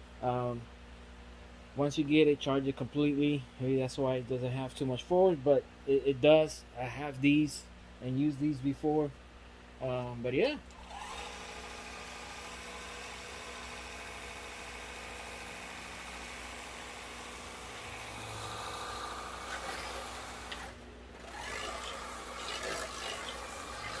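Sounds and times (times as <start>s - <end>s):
pressure washer pump humming: 10.6s - 24.0s.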